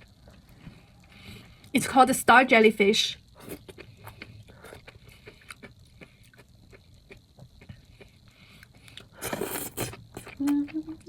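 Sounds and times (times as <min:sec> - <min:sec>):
crunchy chewing: 0:03.4 - 0:10.8.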